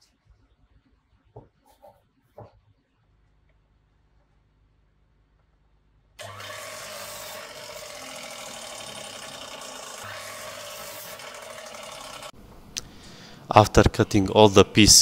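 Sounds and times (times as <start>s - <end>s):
tool rasping wood: 6.2s - 12.4s.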